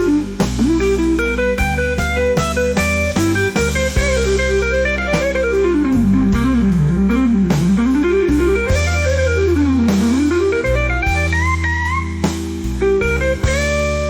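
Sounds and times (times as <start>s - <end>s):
bass notes: 0.0s - 14.0s
blues guitar line: 0.0s - 14.0s.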